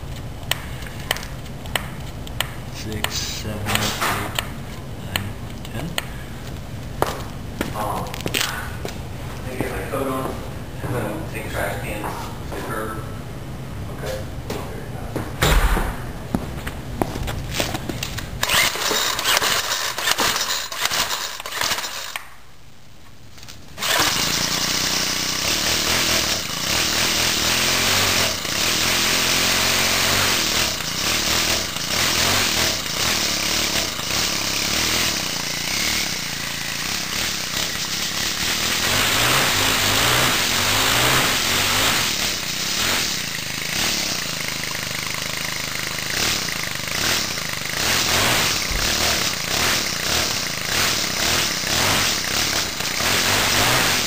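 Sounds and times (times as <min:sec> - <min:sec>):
string trimmer engine starting: 0:18.0 - 0:22.2, 0:23.8 - 0:54.0.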